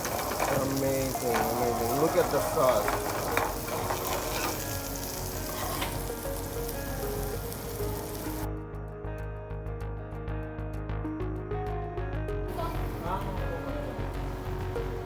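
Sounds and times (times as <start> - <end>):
food sizzling in pans: 0.0 - 8.5, 12.5 - 15.0
music with a steady beat: 4.8 - 15.0.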